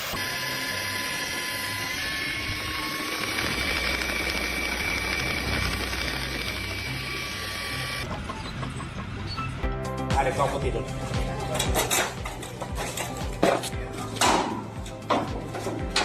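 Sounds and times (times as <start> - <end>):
machine humming and whining: 0.0 - 9.6.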